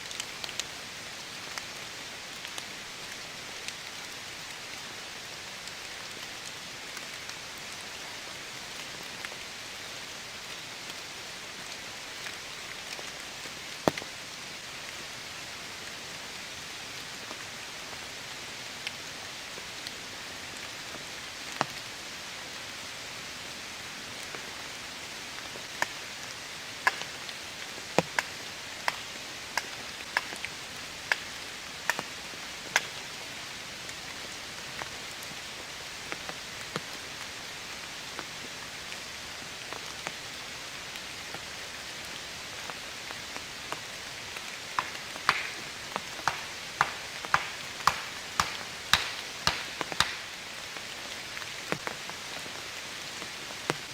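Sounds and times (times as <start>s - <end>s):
heavy rain hiss: 0.0s - 53.9s
sharp ticks: 44.8s - 45.6s, 46.2s - 50.2s.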